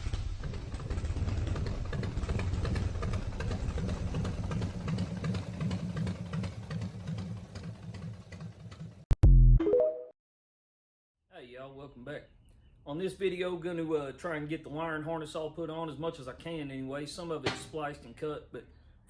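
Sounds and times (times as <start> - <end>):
motorcycle engine running: 0.0 - 9.0
tone rising in steps: 9.2 - 10.1.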